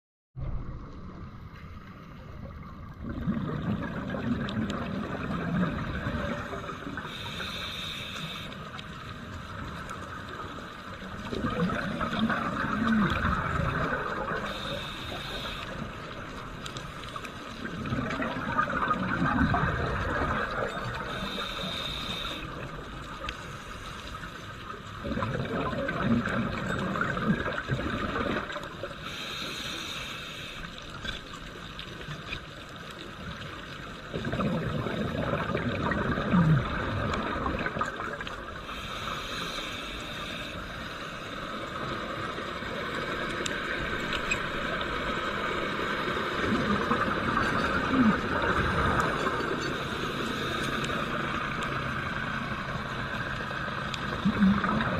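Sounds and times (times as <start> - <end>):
bubbles gurgling underwater: 2.4 - 6.9, 11.0 - 14.7, 17.6 - 21.8, 25.0 - 28.8, 34.0 - 38.5, 43.2 - 49.8, 53.4 - 54.9
regulator air hiss: 7.0 - 8.8, 14.5 - 15.8, 21.1 - 22.6, 29.0 - 30.8, 38.6 - 41.5.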